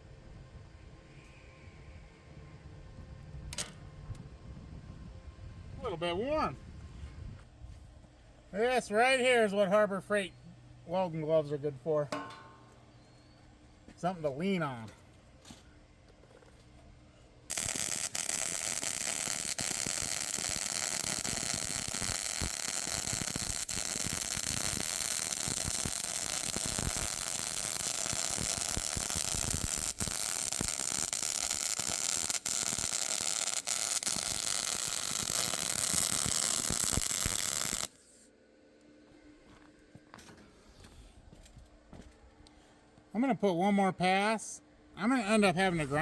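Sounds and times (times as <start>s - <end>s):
welder arc crackling: 17.5s - 38.0s.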